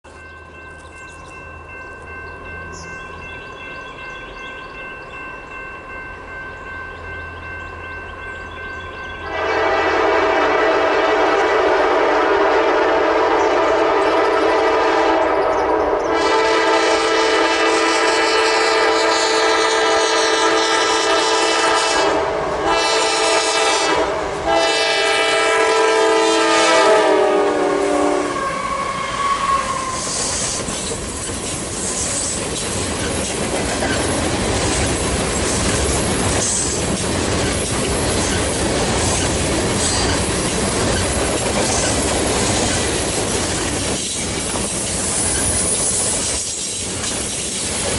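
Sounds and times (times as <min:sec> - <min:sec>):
locomotive horn blowing: 0:09.2 - 0:30.4
train wheels clattering: 0:30.0 - 0:47.9.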